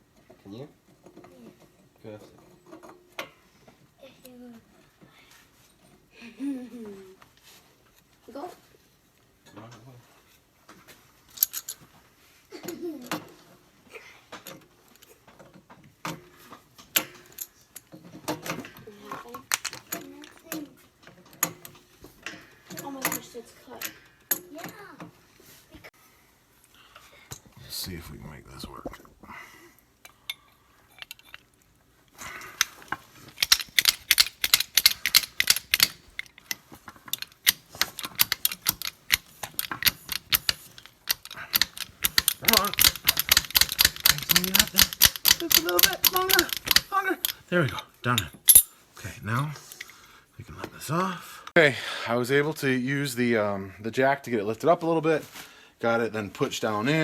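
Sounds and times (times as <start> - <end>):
person speaking: 27.5 - 29.3, 32.6 - 36.3, 37.2 - 49.6
hand tools clinking: 30.2 - 31.5, 32.2 - 48.8.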